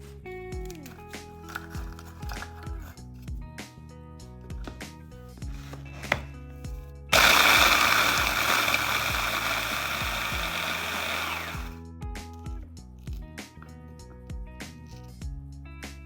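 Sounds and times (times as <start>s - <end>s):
soft background music: 0.0s - 7.1s, 11.8s - 16.0s
kitchen appliance motor running: 7.1s - 11.8s.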